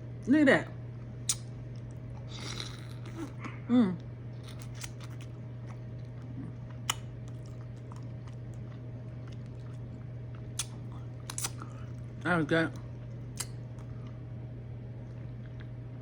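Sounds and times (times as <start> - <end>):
mouth smacking and chewing: 1.3 - 3.6, 4.4 - 14.2.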